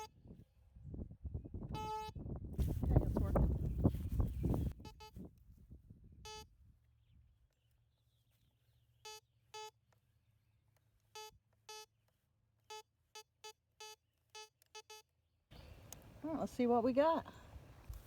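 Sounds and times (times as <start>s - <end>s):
metal detector beeps: 1.7s - 2.1s, 4.8s - 5.2s, 6.2s - 6.5s, 9.0s - 9.8s, 11.1s - 11.9s, 12.6s - 15.1s.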